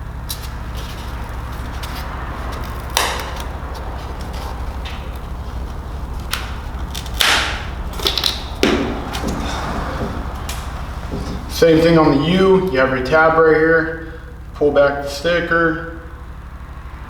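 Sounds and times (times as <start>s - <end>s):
steady low hum: 0.0s - 17.0s
hands handling things: 0.3s - 11.9s.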